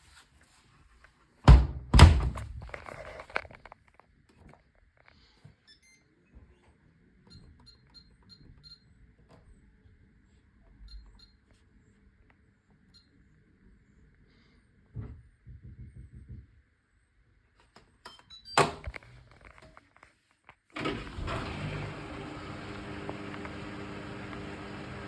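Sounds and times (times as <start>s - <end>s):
washing machine thunks: 1.5s - 2.7s.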